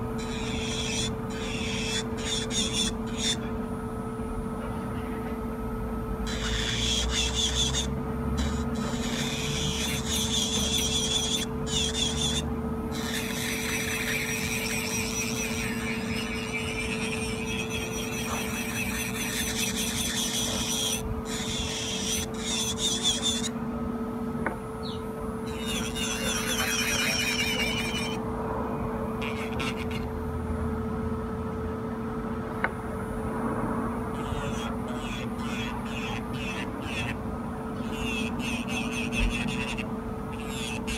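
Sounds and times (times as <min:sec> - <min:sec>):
electric nail drill running: 0:00.2 - 0:03.4, 0:06.2 - 0:23.5, 0:25.4 - 0:28.2, 0:29.2 - 0:30.0, 0:38.0 - 0:40.9
bit grinding nail: 0:00.2 - 0:03.5, 0:06.3 - 0:23.6, 0:25.4 - 0:28.2, 0:29.2 - 0:30.1, 0:34.1 - 0:37.2, 0:37.8 - 0:40.9.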